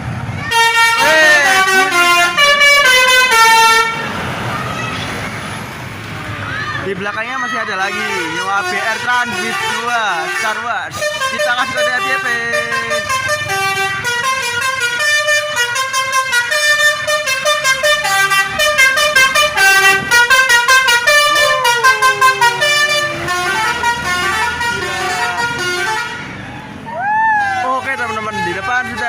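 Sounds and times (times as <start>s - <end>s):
bus horn playing melody: 0.5s - 4.1s, 7.9s - 26.4s.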